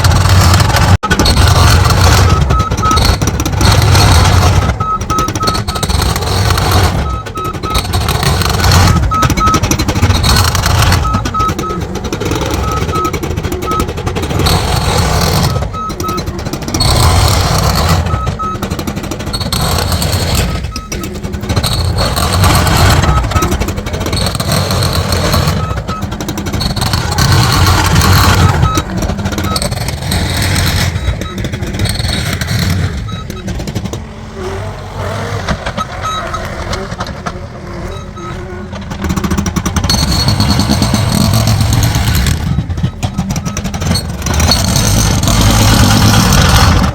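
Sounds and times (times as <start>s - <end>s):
heavy machinery rumbling: 0.0s - 46.9s
backup alarm beeps: 1.2s - 34.0s, 35.7s - 37.0s, 37.6s - 44.6s.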